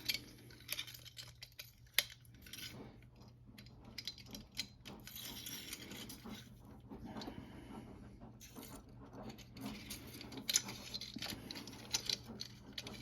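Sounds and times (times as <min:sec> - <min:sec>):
pepper grinder parts clicking: 0:00.0 - 0:02.7, 0:09.3 - 0:13.0.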